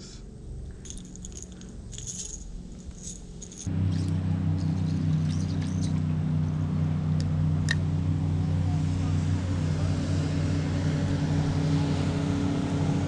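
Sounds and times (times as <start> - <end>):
boat motor droning: 3.3 - 13.0.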